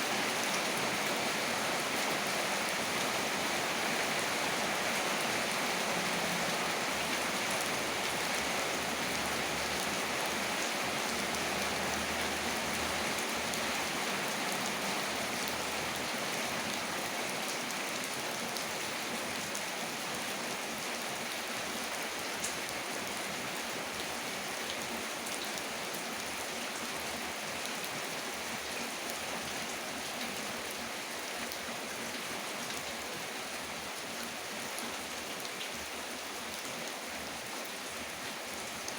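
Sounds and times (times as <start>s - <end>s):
heavy rain hiss: 0.0s - 18.3s.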